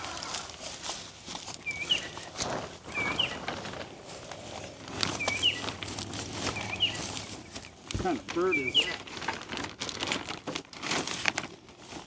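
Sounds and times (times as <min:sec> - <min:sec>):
bird calling: 0:00.0 - 0:09.3.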